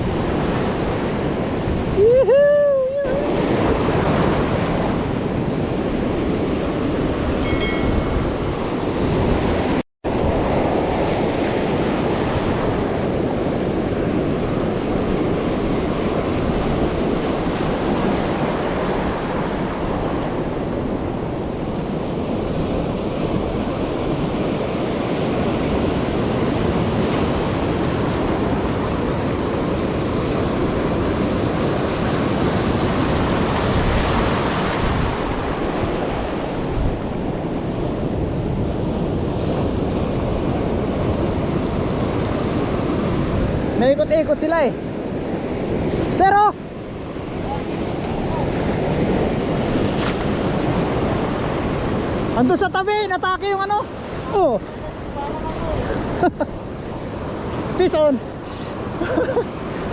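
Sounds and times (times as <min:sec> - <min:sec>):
sea waves washing in: 0:00.0 - 0:59.9
wind buffeting microphone: 0:00.0 - 0:59.9.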